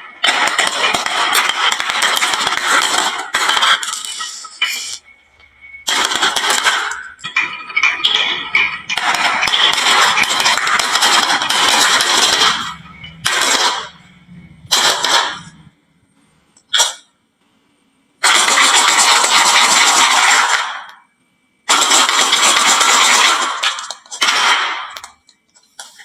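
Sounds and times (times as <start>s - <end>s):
sharp clack: 0.0s - 15.7s.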